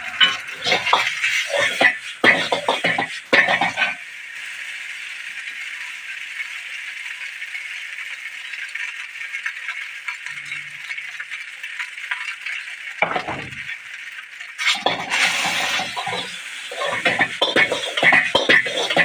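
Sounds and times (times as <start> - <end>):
food frying in hot oil: 0.0 - 19.0
pan clatter: 0.1 - 4.0, 12.1 - 13.8, 14.6 - 19.0.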